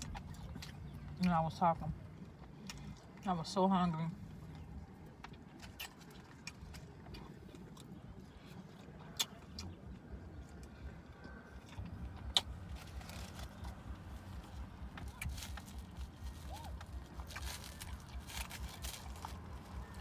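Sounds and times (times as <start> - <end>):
person chewing: 0.0 - 1.2, 2.4 - 3.2, 4.4 - 20.0
low pulsing rumble: 6.6 - 20.0.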